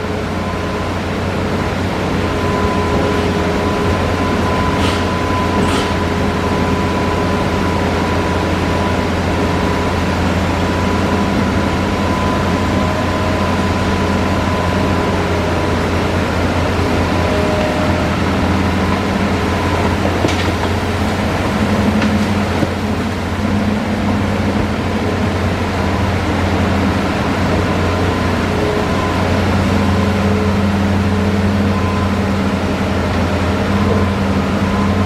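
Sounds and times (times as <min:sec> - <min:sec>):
excavator engine and hydraulics: 0:00.0 - 0:35.0
short hydraulic hisses: 0:04.8 - 0:06.0.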